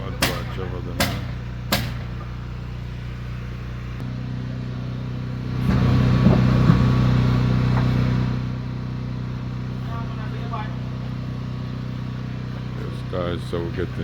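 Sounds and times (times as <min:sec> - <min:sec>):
engine humming: 0:00.0 - 0:14.0
sharp knock: 0:00.2 - 0:02.2.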